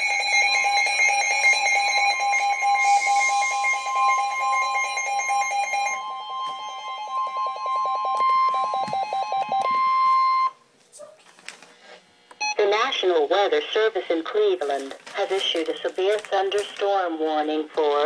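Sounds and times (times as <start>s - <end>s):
steady electronic warning tone: 0.0s - 10.6s.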